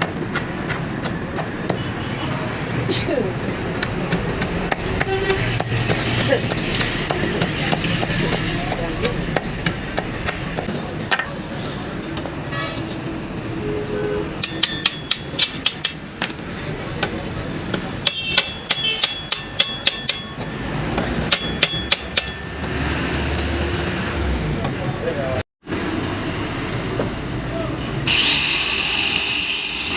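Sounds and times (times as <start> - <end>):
workshop noise: 0.0 - 29.9
hammer striking iron on anvil: 14.4 - 16.0, 18.0 - 20.5, 21.3 - 22.7.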